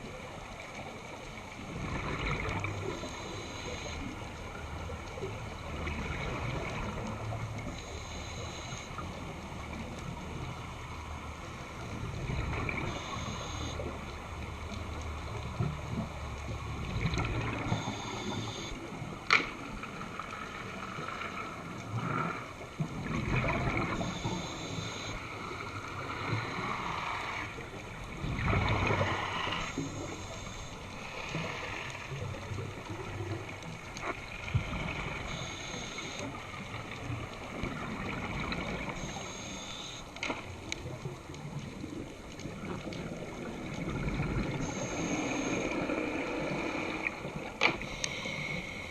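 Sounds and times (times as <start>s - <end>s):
regulator inhaled hiss: 7.8s - 9.0s, 17.6s - 18.8s, 24.0s - 25.2s, 35.3s - 36.3s, 39.0s - 40.0s, 44.6s - 46.0s, 47.8s - 48.9s
exhaled bubbles rushing: 22.2s - 24.1s.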